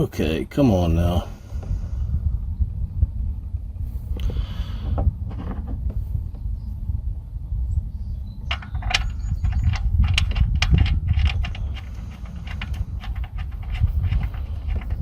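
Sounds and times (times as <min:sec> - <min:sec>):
low handling rumble: 0:00.0 - 0:15.0
wrench clinking and scraping: 0:08.5 - 0:15.0.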